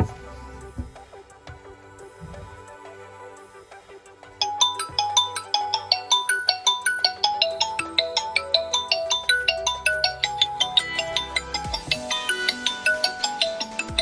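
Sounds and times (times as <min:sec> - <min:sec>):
smartphone ringtone melody: 0:04.4 - 0:14.0.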